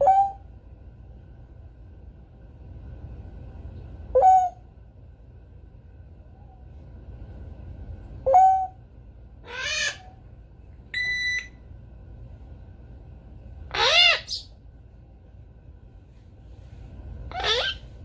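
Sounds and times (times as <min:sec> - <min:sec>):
parrot whistles and calls: 0:00.0 - 0:00.4, 0:04.1 - 0:04.6, 0:08.2 - 0:08.8, 0:13.7 - 0:14.5, 0:17.3 - 0:17.9
parrot high squeak: 0:13.7 - 0:14.5, 0:17.3 - 0:17.9.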